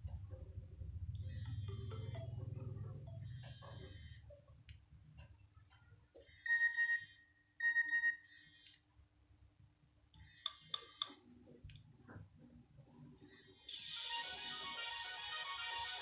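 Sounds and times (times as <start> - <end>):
quick beeps: 6.4 - 8.2.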